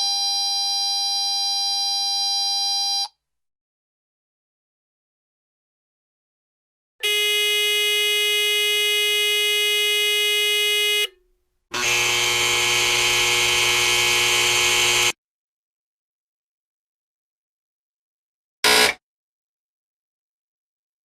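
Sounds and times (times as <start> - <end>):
harsh noisy buzzer: 7.0 - 11.1, 11.7 - 15.2, 18.6 - 19.0
steady buzzer: 7.0 - 11.1, 11.7 - 15.2, 18.6 - 19.0.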